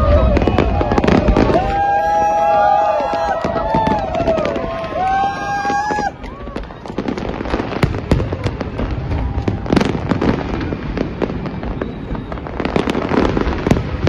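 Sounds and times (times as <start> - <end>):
fireworks bangs and crackling: 0.0 - 14.0.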